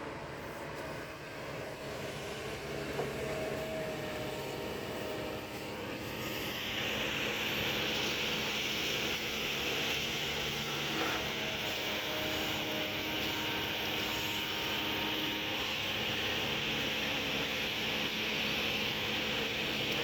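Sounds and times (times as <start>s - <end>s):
excavator diesel engine running: 0.0s - 20.0s
hiss: 5.9s - 20.0s.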